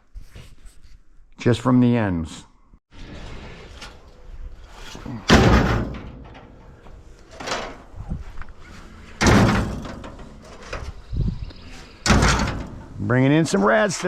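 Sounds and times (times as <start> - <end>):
heavy slams: 4.9 - 6.9, 8.9 - 10.8, 11.7 - 13.0.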